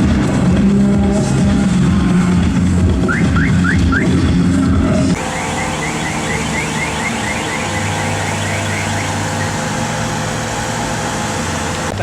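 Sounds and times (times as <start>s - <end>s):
car audio heavy bass: 0.0s - 12.0s
rapid high chirping: 5.2s - 9.6s.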